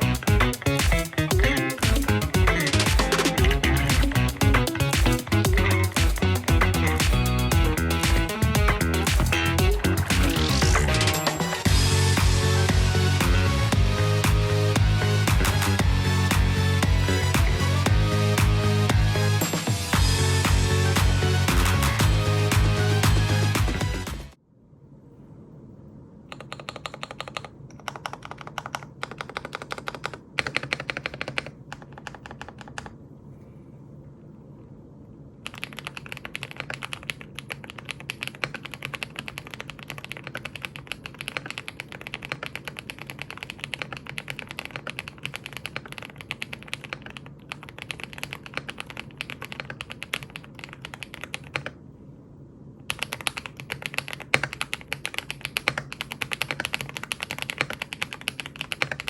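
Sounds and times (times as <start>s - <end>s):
fast typing on mechanical keyboard: 0.0s - 11.7s, 26.3s - 33.0s, 35.4s - 51.8s, 52.9s - 59.0s.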